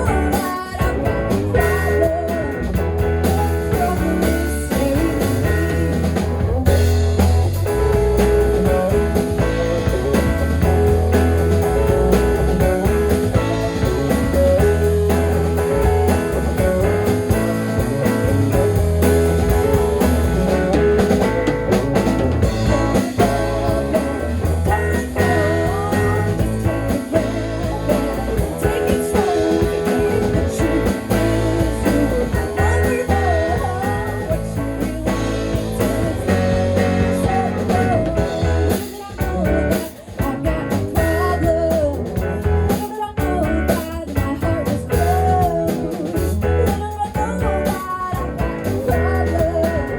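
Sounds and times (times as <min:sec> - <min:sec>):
live rock band playing: 0:00.0 - 0:49.9
bending guitar notes: 0:05.0 - 0:38.7.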